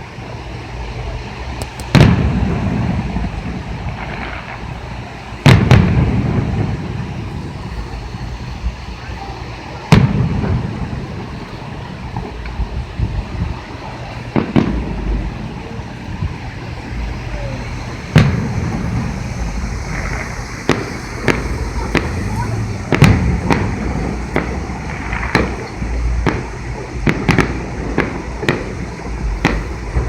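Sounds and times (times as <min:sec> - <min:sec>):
fireworks bangs: 0:00.0 - 0:30.0
low rolling echo: 0:00.0 - 0:30.0
small pops: 0:01.6 - 0:02.0.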